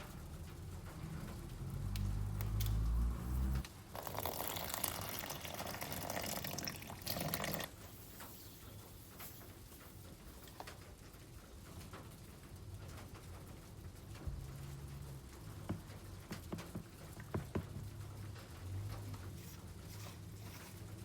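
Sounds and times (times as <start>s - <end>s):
water running from tap: 4.0s - 7.8s.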